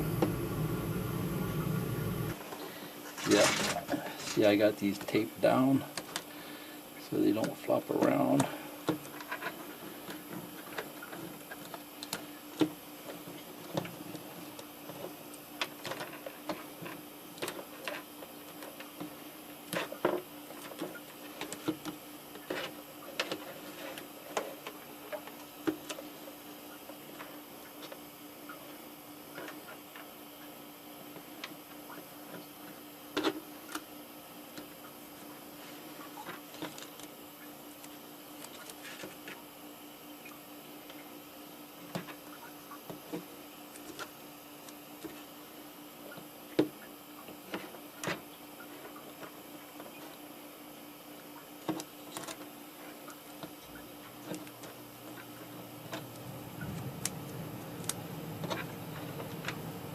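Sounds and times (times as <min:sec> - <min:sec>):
low hum: 0:00.0 - 0:02.4, 0:55.4 - 0:59.9
faint hum and hiss: 0:00.0 - 0:59.9.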